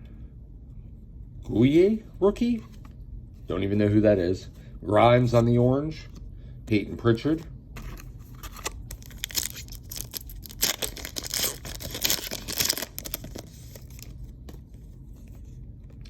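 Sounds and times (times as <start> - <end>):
card pack wrapper tearing and crinkling: 7.8 - 14.2.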